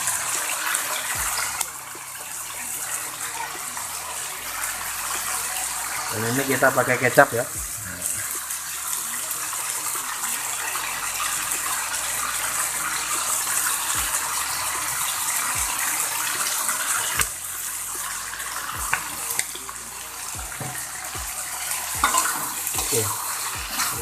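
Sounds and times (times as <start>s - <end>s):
meat sizzling in a pan: 0.0s - 24.0s
spatula knocking against pan: 22.0s - 22.9s.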